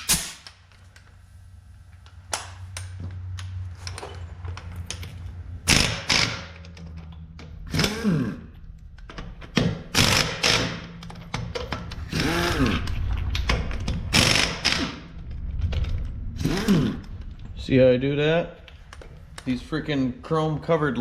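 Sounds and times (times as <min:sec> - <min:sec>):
air impact wrench: 0:00.0 - 0:00.5, 0:05.6 - 0:06.7, 0:07.6 - 0:08.5, 0:09.6 - 0:13.0, 0:14.0 - 0:15.1, 0:16.4 - 0:17.1
steady low hum: 0:00.0 - 0:21.0.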